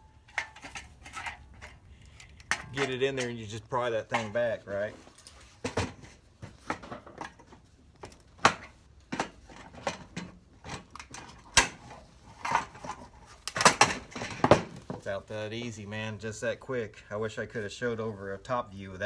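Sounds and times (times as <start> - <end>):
metallic clicks and knocks: 0.2 - 3.4.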